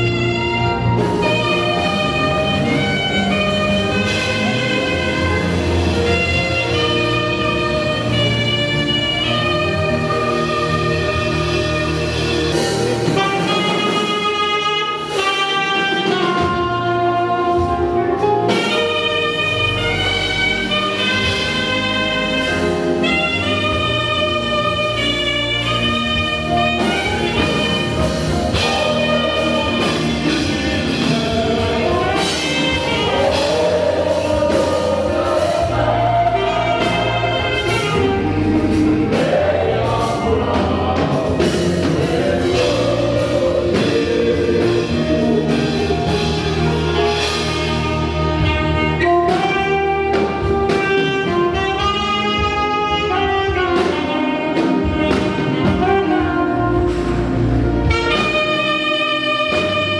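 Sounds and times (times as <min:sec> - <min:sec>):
band with steady drums: 0:00.0 - 0:59.9
saxophone playing lead: 0:00.0 - 0:59.9
singing: 0:28.6 - 0:46.2.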